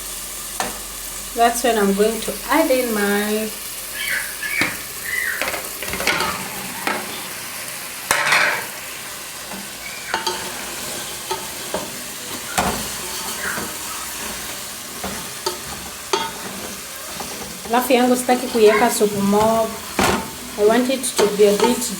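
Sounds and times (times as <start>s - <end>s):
food sizzling in a pot: 0.0s - 21.9s
spoon scraping a pot: 5.4s - 7.3s, 8.1s - 8.8s, 9.4s - 21.9s.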